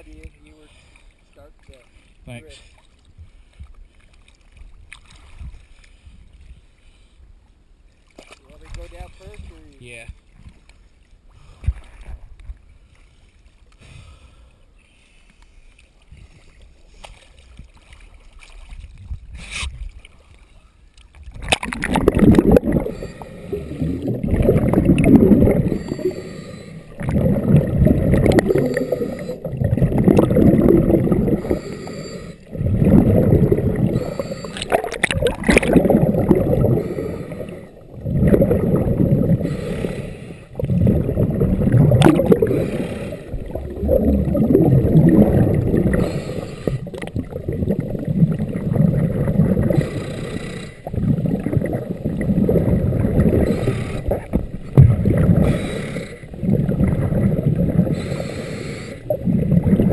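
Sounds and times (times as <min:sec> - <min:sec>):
gurgling underwater bubble bursts: 0:21.3 - 0:39.7, 0:40.5 - 0:50.0, 0:50.8 - 0:58.1, 0:59.0 - 0:59.9.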